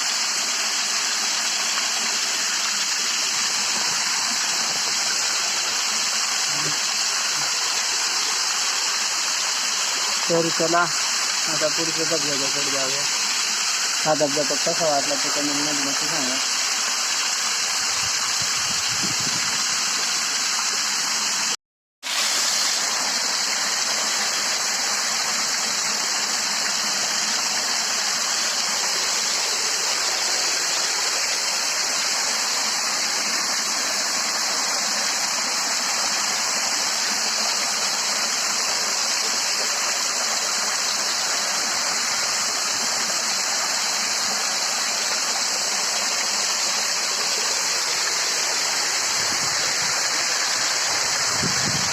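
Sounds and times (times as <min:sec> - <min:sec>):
waterfall and stream rushing: 0:00.0 - 0:51.9.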